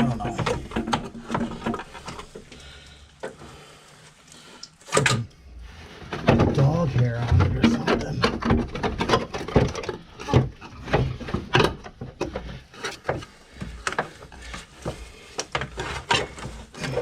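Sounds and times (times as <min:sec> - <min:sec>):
knocks and clunks of car parts: 0:00.0 - 0:02.5, 0:06.1 - 0:17.0.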